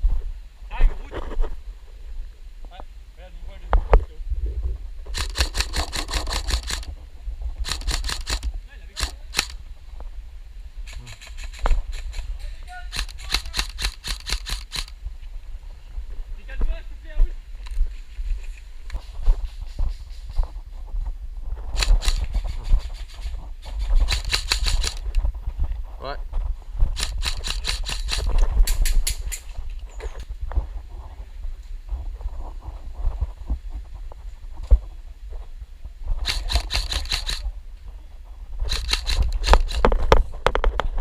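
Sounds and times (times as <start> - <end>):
low wind rumble: 0.0 - 41.0
airsoft gun shots: 5.1 - 6.9, 7.6 - 9.6, 12.9 - 14.9, 21.8 - 22.5, 24.0 - 25.1, 27.0 - 28.4, 36.2 - 37.4, 38.7 - 40.0
knocks of movement: 5.1 - 9.6, 10.8 - 15.0, 21.6 - 25.7, 26.8 - 29.2, 36.2 - 37.5, 38.6 - 41.0.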